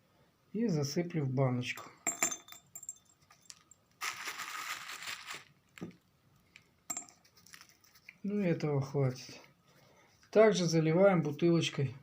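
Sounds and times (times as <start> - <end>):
resin crunching and crumbling: 3.2 - 8.2.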